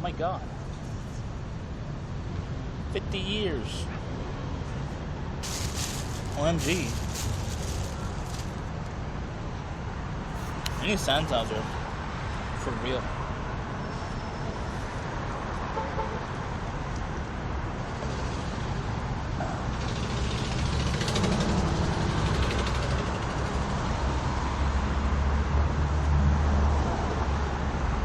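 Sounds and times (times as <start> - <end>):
passing road vehicles: 0.3 - 28.0
heavy vehicle rumble: 3.7 - 11.6.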